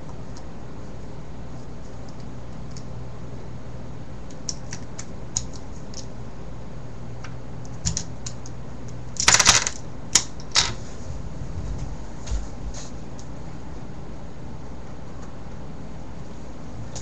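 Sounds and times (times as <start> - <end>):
plastic puzzle pieces clicking: 9.2 - 10.7.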